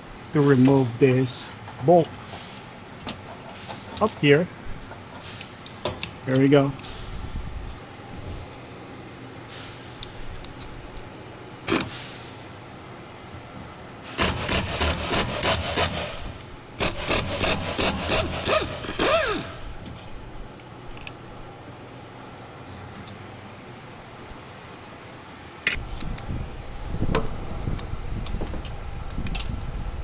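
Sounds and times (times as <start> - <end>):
ratchet click: 14.2 - 19.6
hand ratchet rasping: 14.2 - 19.7.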